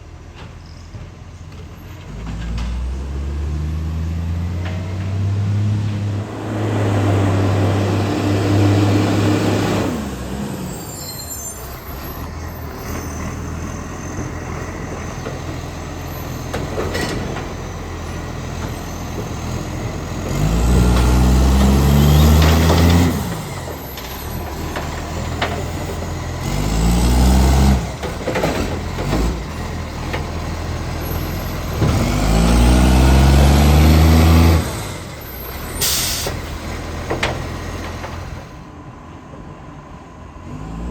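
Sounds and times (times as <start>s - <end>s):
diesel truck engine revving: 2.0s - 38.7s, 40.2s - 40.9s
air brake hisses: 35.8s - 36.5s.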